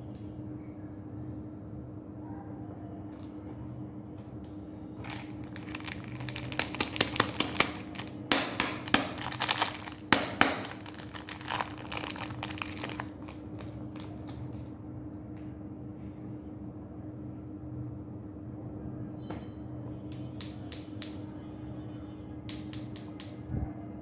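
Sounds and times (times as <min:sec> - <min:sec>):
plastic wrappers crinkling: 0:05.0 - 0:14.6.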